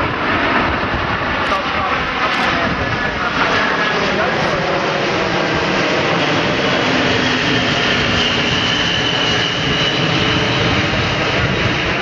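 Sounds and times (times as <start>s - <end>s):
jet aircraft flying past: 0.0s - 12.0s.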